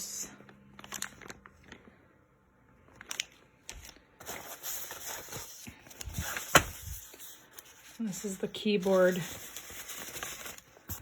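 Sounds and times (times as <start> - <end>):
packaging crinkling: 0.7 - 1.8.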